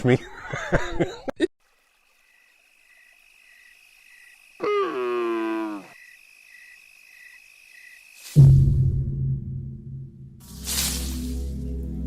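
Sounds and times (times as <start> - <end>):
insect-like chirping: 1.6 - 8.4
falling hoot-like call: 4.6 - 6.0.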